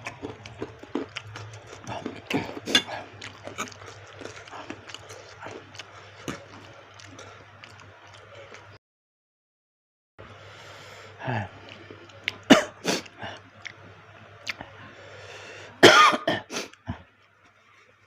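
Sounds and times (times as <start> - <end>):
person clearing throat: 12.5 - 13.1, 15.8 - 17.0
person coughing: 12.5 - 13.1, 15.8 - 16.7.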